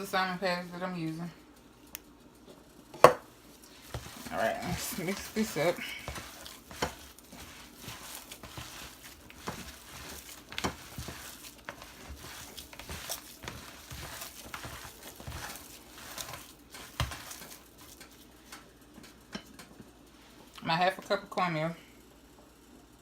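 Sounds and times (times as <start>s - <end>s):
mixture stirred in a bowl: 3.0s - 18.6s.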